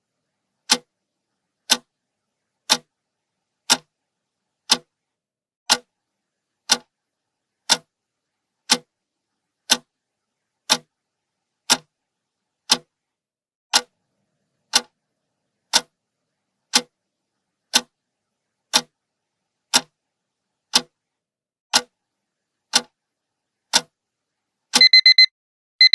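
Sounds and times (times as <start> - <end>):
clock ticking: 0.7 - 0.9, 1.7 - 1.9, 2.7 - 2.9, 3.7 - 3.9, 4.7 - 4.9, 5.7 - 5.9, 7.7 - 7.9, 10.7 - 10.9, 12.7 - 12.9, 13.7 - 13.9, 15.7 - 15.9, 16.7 - 16.9, 17.7 - 17.9, 18.7 - 18.9, 19.7 - 19.9, 20.7 - 21.0, 24.8 - 25.9
timer alarm beeping: 24.8 - 25.9.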